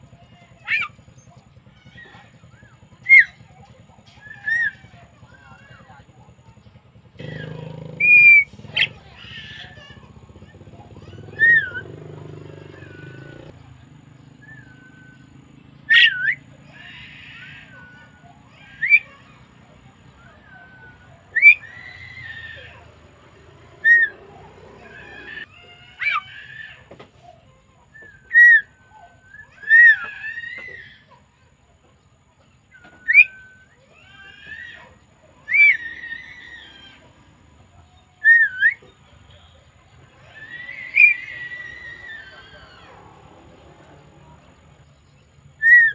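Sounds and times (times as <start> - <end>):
bird whistled calls: 0.2 - 5.8, 7.2 - 13.6, 14.2 - 19.4, 20.2 - 22.9, 23.7 - 26.7, 27.9 - 31.0, 32.7 - 37.1, 37.9 - 39.4, 40.0 - 43.0, 45.6 - 45.9.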